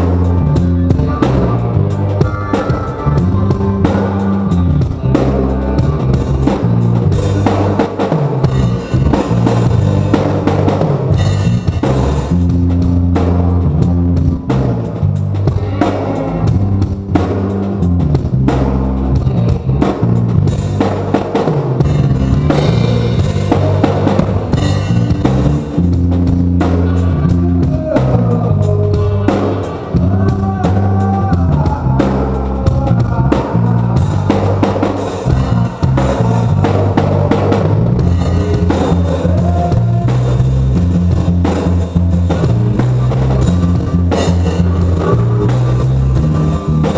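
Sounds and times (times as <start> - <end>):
live band playing: 0.0 - 46.9
bass drum and snare hits: 34.0 - 46.9.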